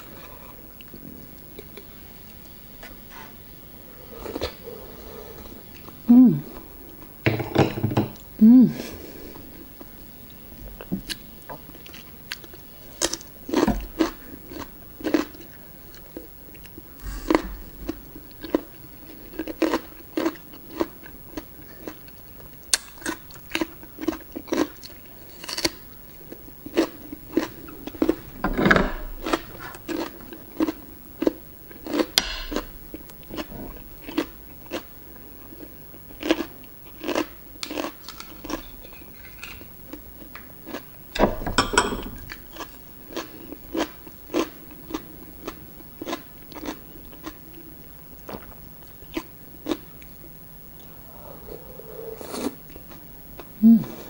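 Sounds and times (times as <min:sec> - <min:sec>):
wet chewing and crunching: 0:09.8 - 0:28.3, 0:29.1 - 0:41.0, 0:42.3 - 0:50.2.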